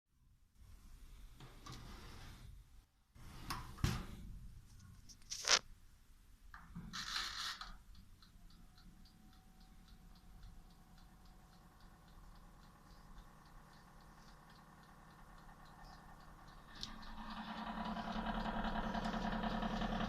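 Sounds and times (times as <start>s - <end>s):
even ticking: 7.7s - 20.0s
oven fan hum: 8.0s - 20.0s.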